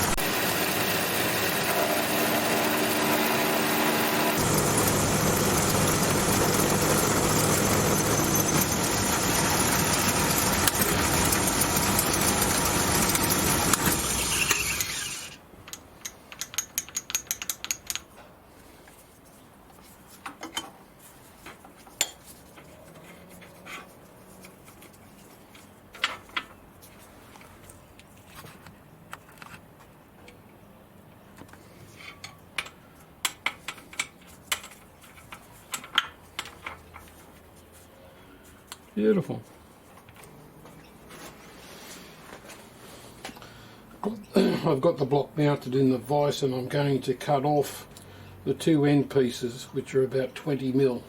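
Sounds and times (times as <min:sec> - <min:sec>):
milling machine cutting metal: 0:00.0 - 0:15.4.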